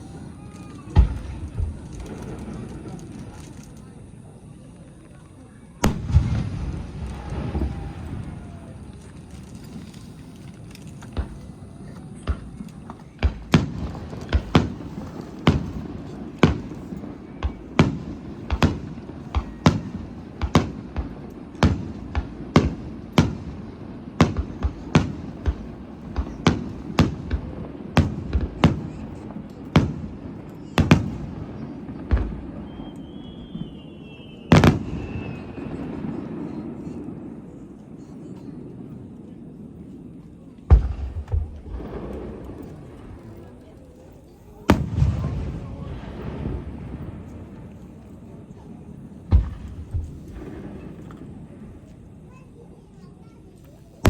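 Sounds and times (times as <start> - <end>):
fireworks bursting with bangs: 0.0 - 4.4, 5.7 - 54.0
faint wavering high whistle: 32.6 - 35.9.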